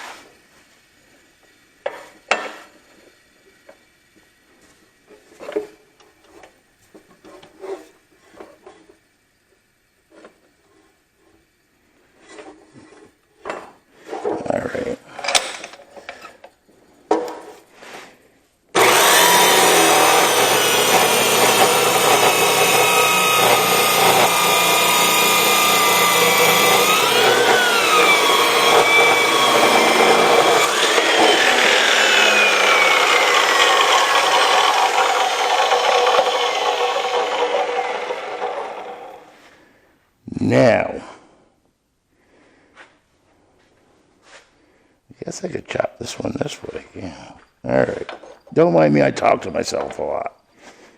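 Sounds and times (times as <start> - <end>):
chop saw cutting steel: 18.8 - 39.3.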